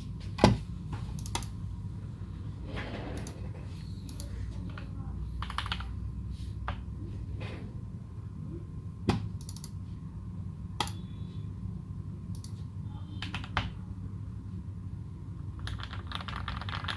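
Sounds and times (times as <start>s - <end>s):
mechanical keyboard keystrokes: 4.1s - 5.9s, 15.6s - 16.9s.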